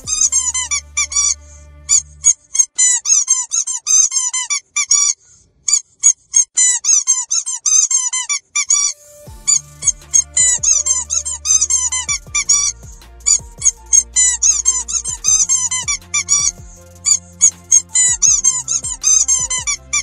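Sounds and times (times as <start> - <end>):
squeaky dog toy: 2.2 - 9.0.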